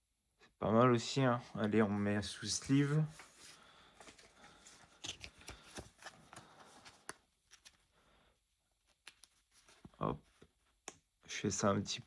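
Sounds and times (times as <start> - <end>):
trading cards rustling and clicking: 4.0 - 7.9.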